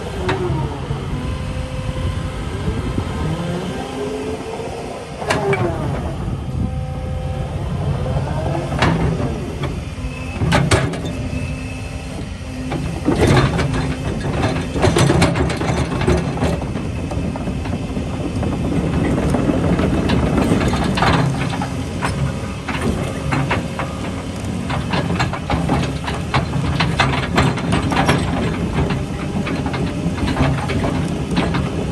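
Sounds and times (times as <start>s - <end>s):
sweeping whines: 0.0s - 13.2s
excavator diesel engine: 0.0s - 31.9s
metallic clanks and knocks: 8.7s - 9.8s, 10.4s - 11.2s, 12.6s - 31.9s.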